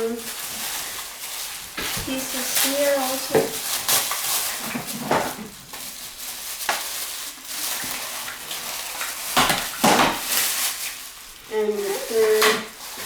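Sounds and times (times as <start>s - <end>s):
plastic packaging crinkling: 0.0s - 13.0s
plastic pieces knocking: 7.7s - 11.0s.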